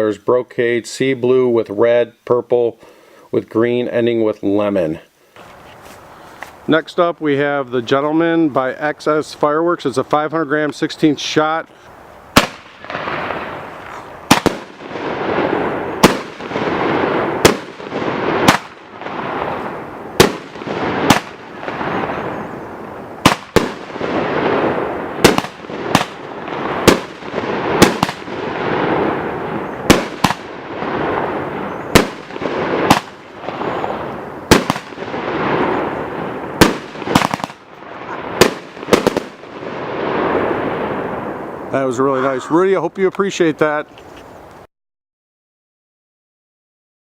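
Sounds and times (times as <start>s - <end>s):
firework reports: 0.0s - 43.9s.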